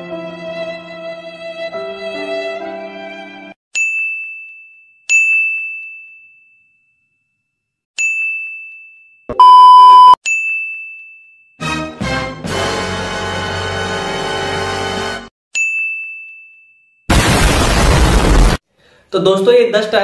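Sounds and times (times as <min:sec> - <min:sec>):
loud steady beep: 0:09.3 - 0:10.2.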